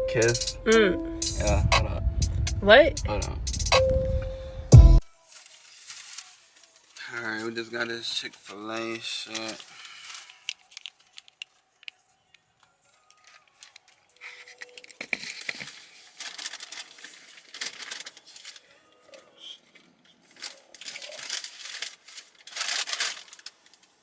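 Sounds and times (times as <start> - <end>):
food wrappers rustling and tearing: 5.2 - 12.0, 13.0 - 24.0.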